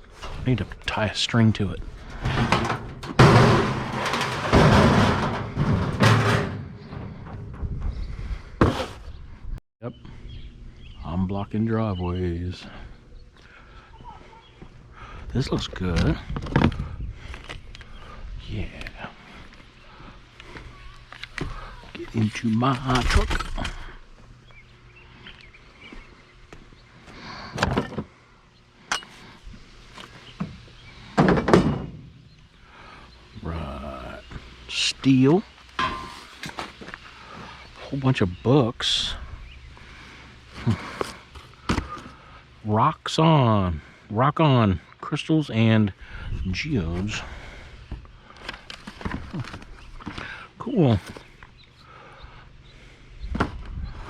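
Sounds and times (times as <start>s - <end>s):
scrap metal scraping and rattling: 0.0s - 9.2s, 35.8s - 37.5s
loud metal bang: 2.1s - 8.0s.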